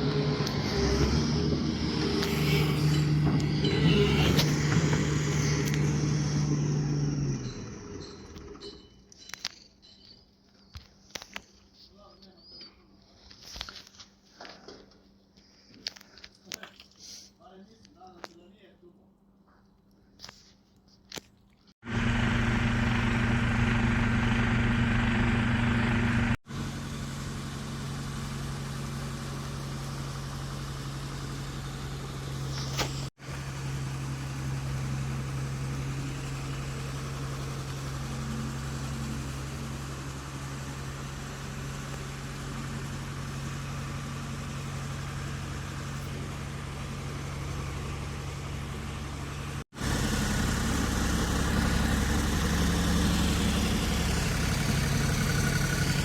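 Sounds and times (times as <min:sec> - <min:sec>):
brief high sweep: 0:00.0 - 0:07.8
engine humming low: 0:00.0 - 0:10.6, 0:21.8 - 0:56.0.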